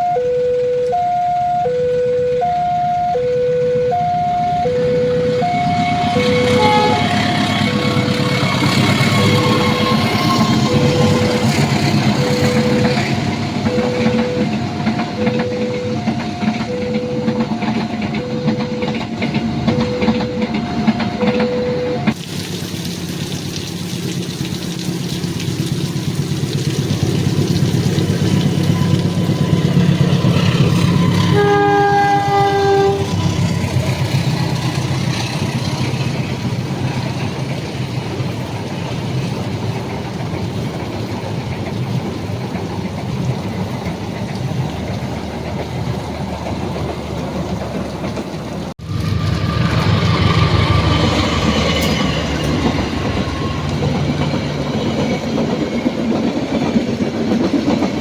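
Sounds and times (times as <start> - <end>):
two-tone warning alarm: 0.0 - 22.2, 28.7 - 33.8
diesel train rumbling: 0.0 - 58.0
train horn blast: 4.0 - 14.6, 30.6 - 33.4
rain hiss: 22.1 - 30.2.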